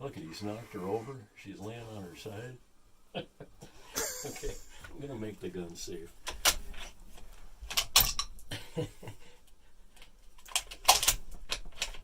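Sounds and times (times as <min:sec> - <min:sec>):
shotgun action clicks and clacks: 0:10.4 - 0:12.0.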